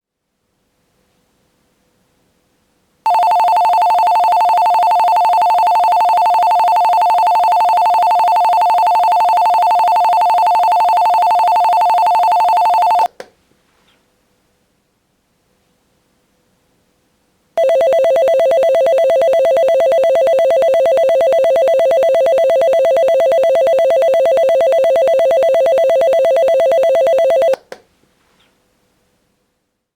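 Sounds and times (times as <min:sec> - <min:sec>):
electronic alarm bell ringing: 0:03.1 - 0:13.1, 0:17.6 - 0:27.6.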